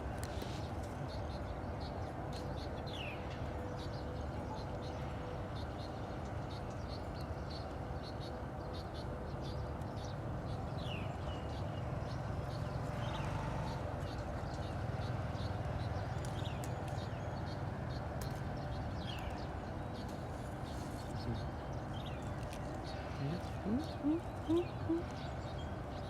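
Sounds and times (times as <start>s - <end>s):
baby birds cheeping: 21.1s - 26.0s.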